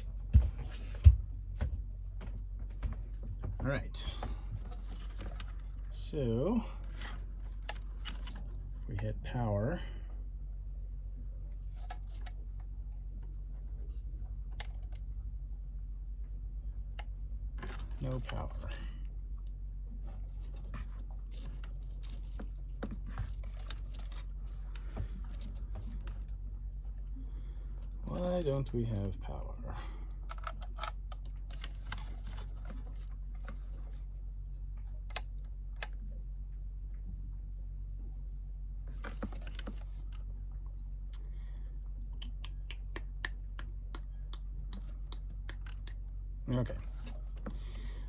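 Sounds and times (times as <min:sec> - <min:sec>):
steady low hum: 0:00.0 - 0:48.0
hands handling wiring: 0:20.0 - 0:28.0.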